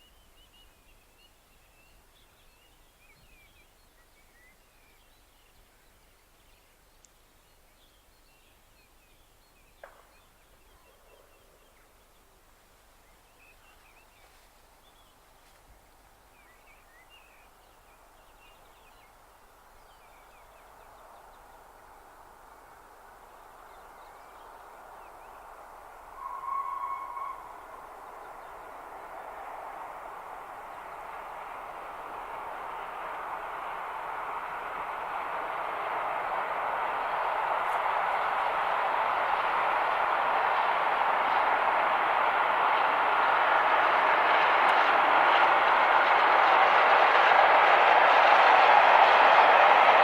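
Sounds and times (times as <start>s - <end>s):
steam train approaching: 8.2s - 50.0s
train whistle blast: 26.2s - 27.7s.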